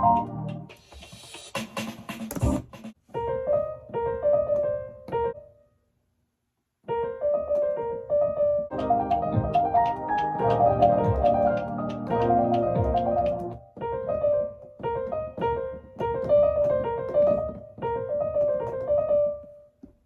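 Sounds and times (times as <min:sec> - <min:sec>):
piano keyboard phrase: 0:06.9 - 0:19.6.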